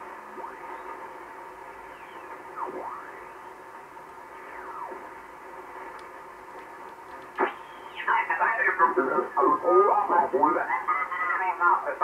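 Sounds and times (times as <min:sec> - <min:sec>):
shortwave radio hiss: 0:00.0 - 0:12.0
radio whistles gliding in pitch: 0:01.7 - 0:03.6, 0:04.3 - 0:05.2, 0:07.4 - 0:08.2.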